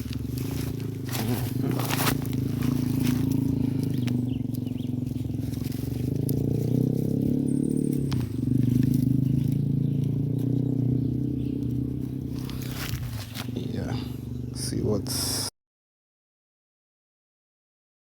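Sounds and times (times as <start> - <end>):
low engine drone: 0.0 - 15.5.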